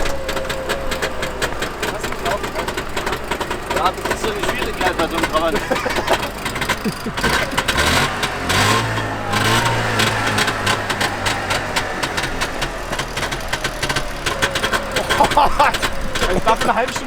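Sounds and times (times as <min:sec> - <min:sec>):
car engine with rattling beat: 0:00.0 - 0:17.0.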